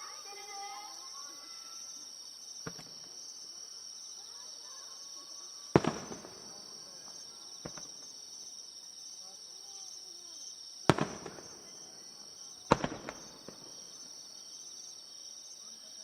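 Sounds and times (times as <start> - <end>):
crickets chirping: 0.0 - 16.0
fireworks bang: 2.6 - 3.3, 5.7 - 8.2, 10.9 - 14.2
faint firework thuds: 2.6 - 3.5, 5.7 - 8.4, 10.9 - 14.3.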